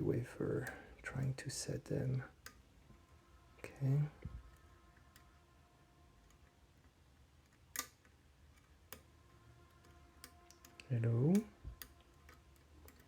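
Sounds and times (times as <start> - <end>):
room hum: 0.0 - 13.0
lock pick clicking: 6.2 - 13.0.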